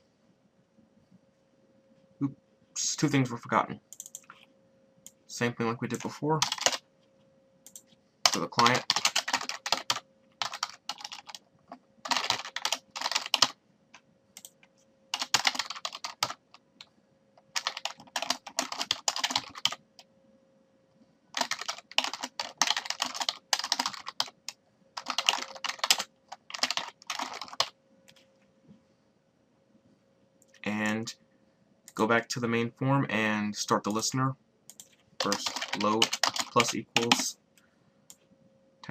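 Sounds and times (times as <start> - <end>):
computer keyboard typing: 3.9 - 4.4, 5.9 - 6.8, 7.6 - 13.6, 14.4 - 20.1, 21.4 - 28.2, 34.7 - 37.3.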